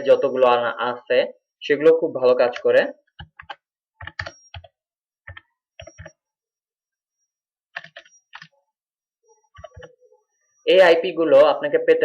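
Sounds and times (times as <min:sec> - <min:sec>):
computer keyboard typing: 0:02.5 - 0:06.2, 0:07.7 - 0:08.6, 0:09.6 - 0:10.0.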